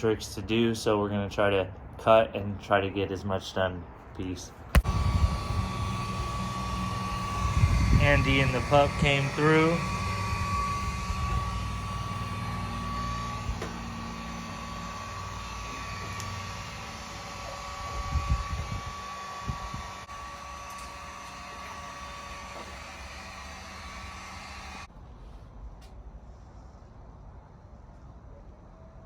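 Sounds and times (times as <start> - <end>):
electric blower motor whine: 4.8 - 24.9.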